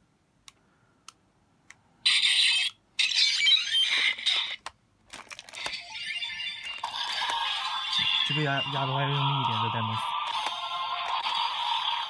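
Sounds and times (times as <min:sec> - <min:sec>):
toy speaker sound effects: 0:02.0 - 0:04.6, 0:05.6 - 0:12.0
toy controls clicking: 0:02.1 - 0:12.0.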